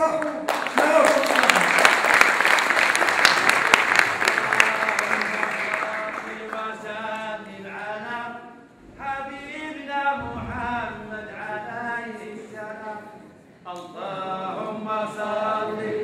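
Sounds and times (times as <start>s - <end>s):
audience applause: 0.0s - 6.7s.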